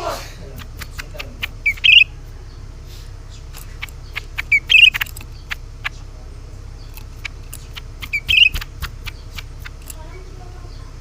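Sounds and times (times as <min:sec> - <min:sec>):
steady low hum: 0:00.0 - 0:11.0
dry ticking clicks: 0:00.6 - 0:02.1, 0:03.5 - 0:06.0, 0:06.9 - 0:10.0
bird call with rattling trill: 0:01.4 - 0:02.6, 0:03.4 - 0:06.0, 0:06.8 - 0:10.8.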